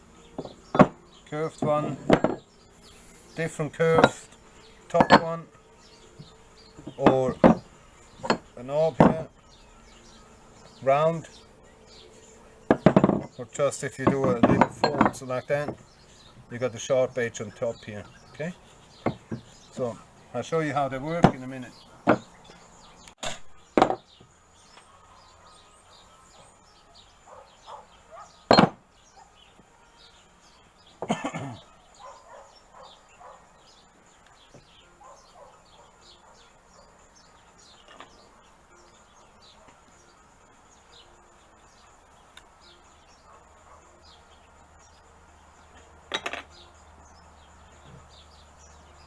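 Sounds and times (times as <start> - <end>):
faint bird chirping: 0.0 - 49.0
knocks on a bench: 0.4 - 2.5, 6.2 - 9.3, 12.7 - 13.4, 14.0 - 15.9, 19.0 - 19.9, 21.2 - 22.6, 23.2 - 24.2, 28.5 - 28.8
metallic clanks and clatters: 14.0 - 15.8.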